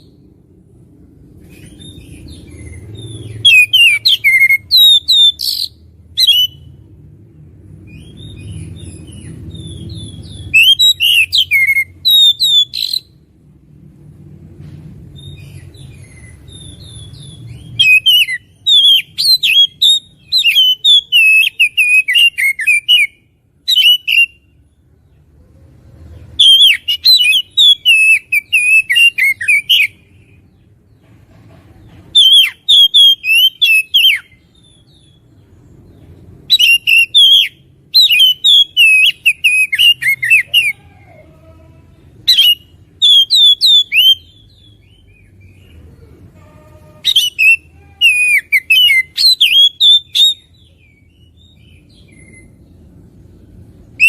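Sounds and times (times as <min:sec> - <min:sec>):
magpie-robin singing: 0:01.4 - 0:06.8, 0:07.8 - 0:13.2, 0:15.2 - 0:24.6, 0:26.2 - 0:30.4, 0:32.0 - 0:40.8, 0:42.1 - 0:45.8, 0:46.9 - 0:52.8.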